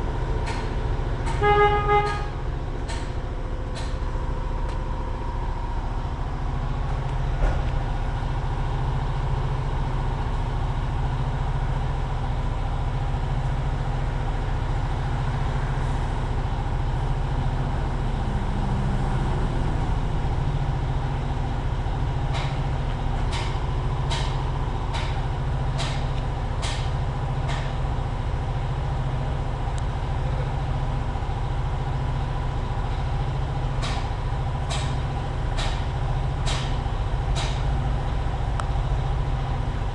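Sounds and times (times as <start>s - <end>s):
compressor humming: 0.0s - 9.8s.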